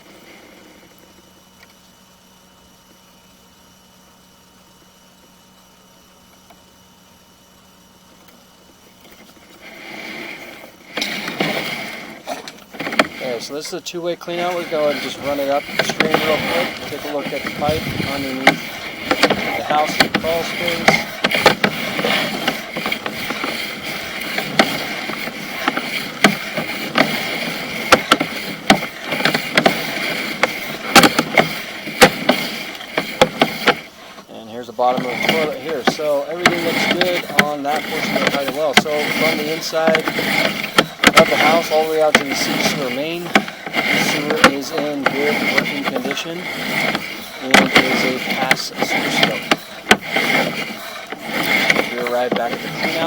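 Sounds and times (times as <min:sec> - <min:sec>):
low steady hum: 0:00.0 - 0:53.0
cable scraping and rattling: 0:09.0 - 0:53.0
sharp clattering knocks: 0:14.3 - 0:33.9.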